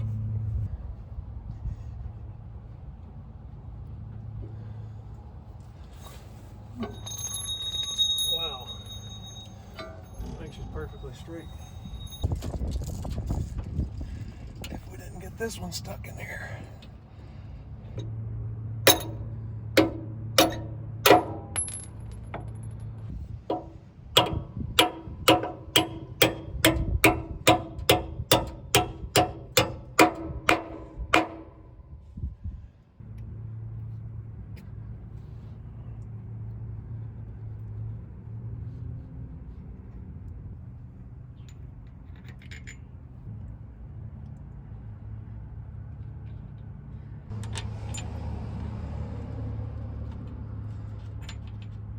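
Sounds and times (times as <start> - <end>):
low hum: 0.0 - 14.6, 16.6 - 41.6
hammer striking steel: 6.8 - 10.3, 18.9 - 22.5, 23.5 - 31.8.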